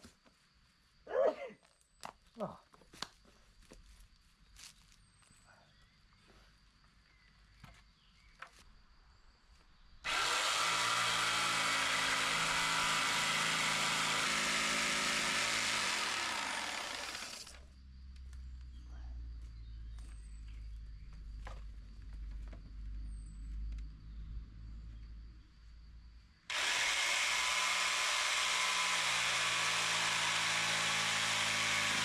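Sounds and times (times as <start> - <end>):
electric saw cutting wood: 10.1 - 17.6, 26.5 - 32.0
saw motor winding down: 10.1 - 17.6, 26.5 - 32.0.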